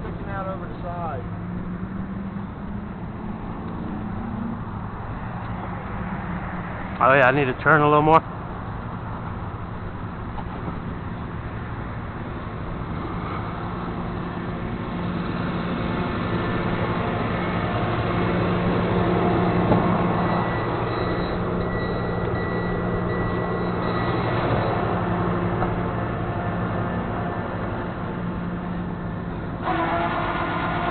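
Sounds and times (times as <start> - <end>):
truck engine running: 6.9 - 30.9.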